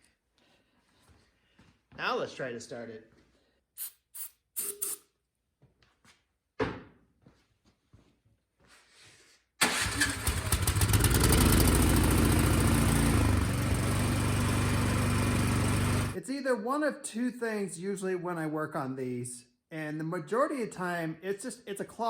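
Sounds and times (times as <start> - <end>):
snowblower engine starting: 9.6 - 16.2.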